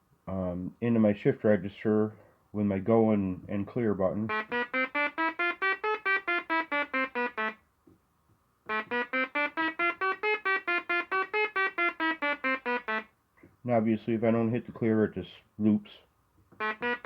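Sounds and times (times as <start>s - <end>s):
buzzy synthesizer sequence: 4.2s - 7.6s, 8.7s - 13.1s, 16.6s - 17.0s.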